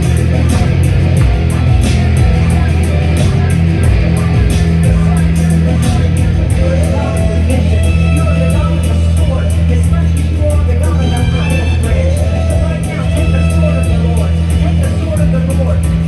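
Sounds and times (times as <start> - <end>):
guitar: 0.0 - 16.0
rock band playing: 0.0 - 16.0.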